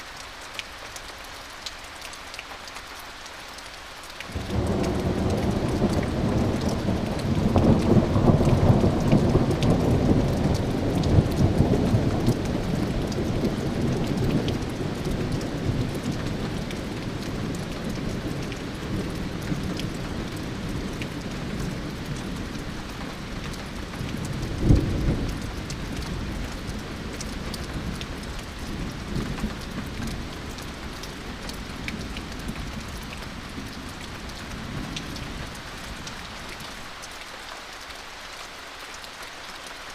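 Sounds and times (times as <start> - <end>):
rain pattering and dripping: 0.0 - 39.9
thunder rumbling: 4.3 - 22.6.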